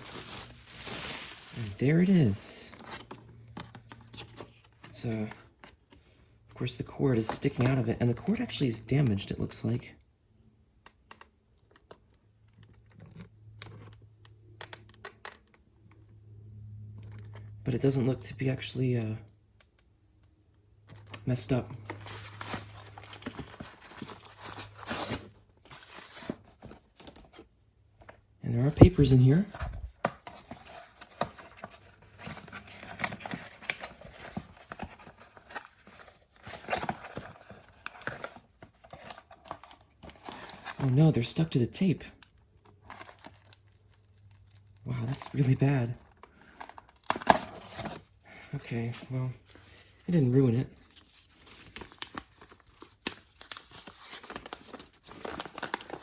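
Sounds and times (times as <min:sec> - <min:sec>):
papers rustling and crinkling: 0:00.0 - 0:06.0, 0:20.9 - 0:41.4, 0:42.6 - 0:56.0.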